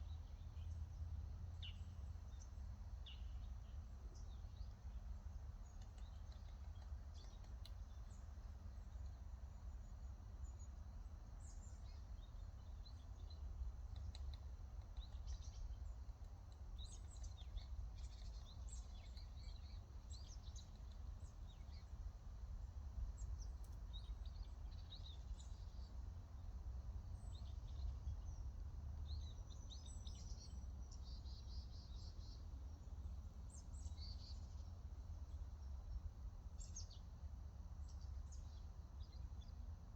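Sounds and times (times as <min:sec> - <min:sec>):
wild birds chirping: 0:01.6 - 0:22.1.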